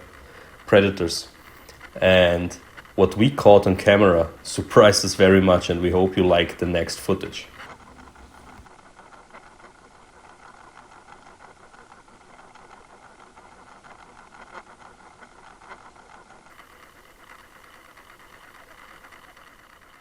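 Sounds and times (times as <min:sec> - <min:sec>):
fast ticking rattle: 0:00.0 - 0:08.7, 0:09.8 - 0:20.0.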